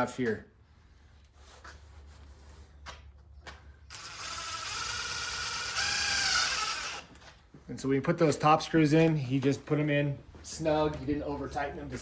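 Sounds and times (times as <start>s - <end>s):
cordless drill driving screw: 3.9s - 7.2s.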